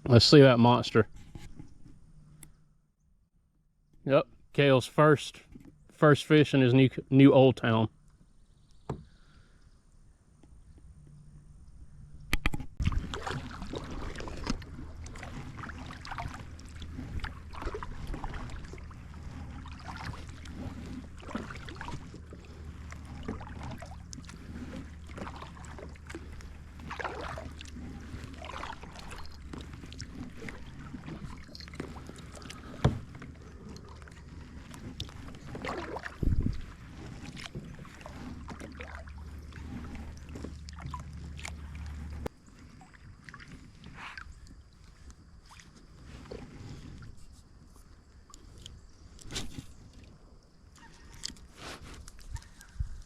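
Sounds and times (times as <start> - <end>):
paddle strokes splashing water: 12.8 - 53.0.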